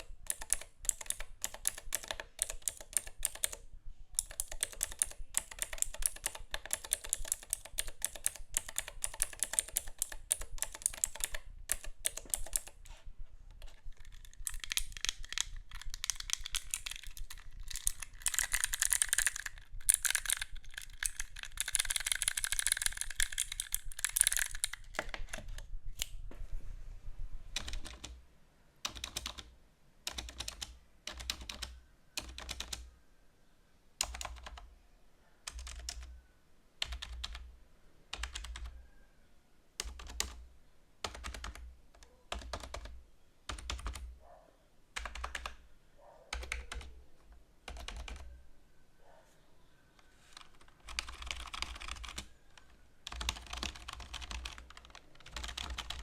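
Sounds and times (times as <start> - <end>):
keyboard typing: 0.0 - 3.6, 4.2 - 12.9, 13.5 - 25.7, 27.6 - 28.2, 28.8 - 29.5, 30.1 - 32.9, 34.0 - 34.7, 35.5 - 36.2, 36.8 - 37.5, 38.1 - 38.8, 39.8 - 40.4, 41.0 - 44.2, 45.0 - 45.6, 46.3 - 48.4, 50.0 - 56.0.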